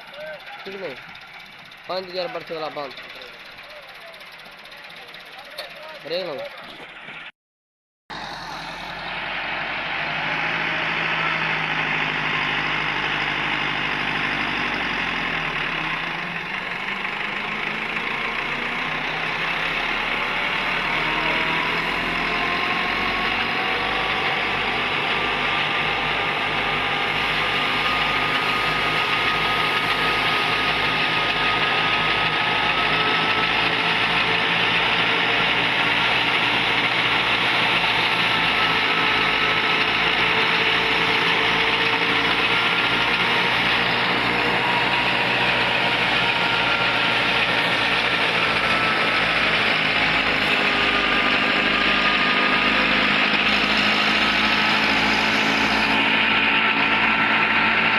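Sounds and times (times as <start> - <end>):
tractor engine running: 0.0 - 7.3, 8.1 - 57.9
high mechanical whine: 25.9 - 57.9.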